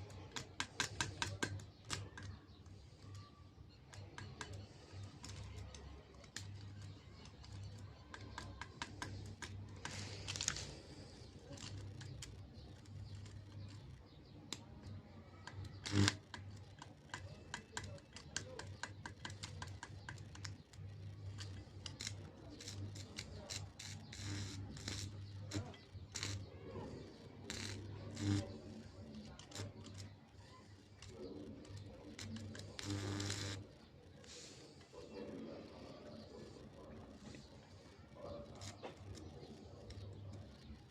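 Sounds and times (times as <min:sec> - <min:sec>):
crackling arc clicks: 0:00.0 - 0:40.9
welder humming: 0:15.5 - 0:16.6, 0:20.4 - 0:34.9.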